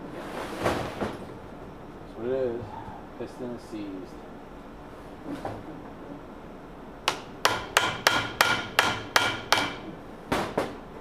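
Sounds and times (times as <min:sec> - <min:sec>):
hammer striking metal with ringing: 0:07.1 - 0:09.8.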